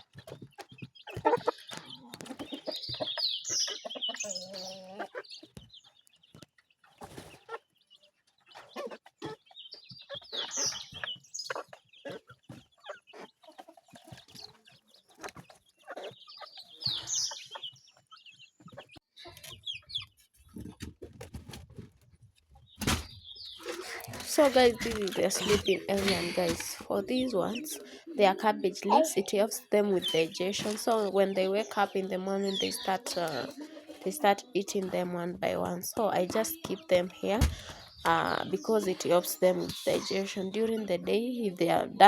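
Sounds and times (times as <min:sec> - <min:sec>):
chicks peeping: 0:00.0 - 0:42.0
hen calling: 0:01.1 - 0:05.2, 0:23.5 - 0:42.0.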